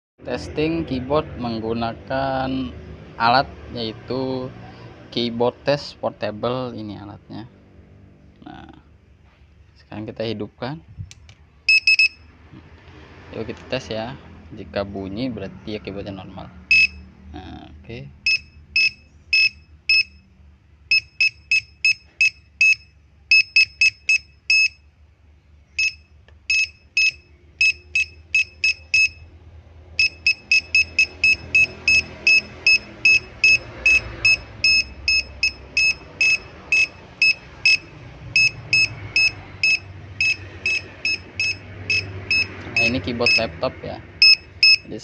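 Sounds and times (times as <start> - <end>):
short high beeps: 11.7 - 12.3, 20.9 - 24.8, 25.8 - 29.3, 30.0 - 43.5, 44.2 - 44.9.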